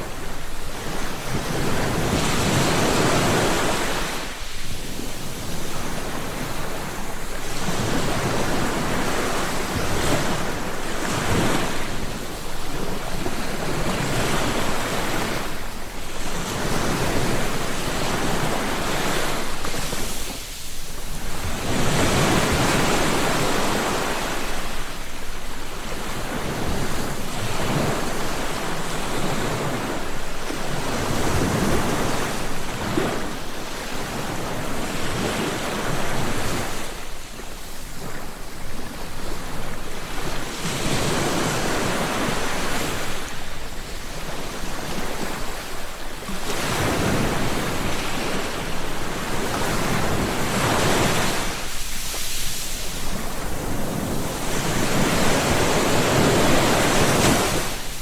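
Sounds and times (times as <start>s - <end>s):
ocean waves breaking on shore: 0.0s - 58.0s
wind on microphone: 0.0s - 58.0s.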